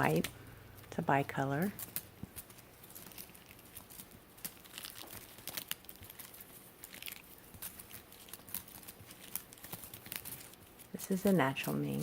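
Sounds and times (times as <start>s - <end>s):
rustling and crinkling: 0.0s - 12.0s.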